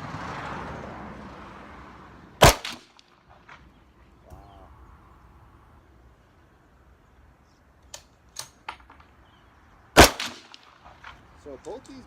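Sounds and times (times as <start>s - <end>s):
rifle shot: 2.4s - 3.1s, 10.0s - 11.2s.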